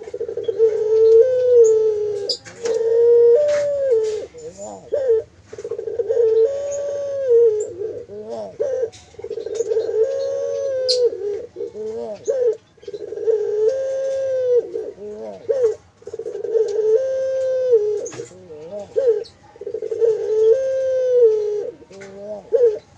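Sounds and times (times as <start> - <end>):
dove cooing: 0.0 - 22.9
small birds chirping: 0.0 - 22.9.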